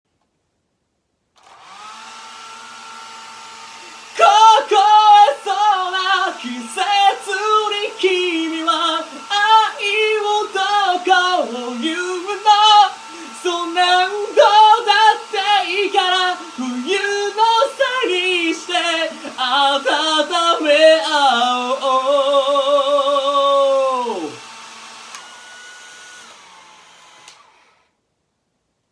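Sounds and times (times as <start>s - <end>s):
hair dryer humming: 1.4s - 28.0s
person singing unaccompanied: 4.0s - 24.4s.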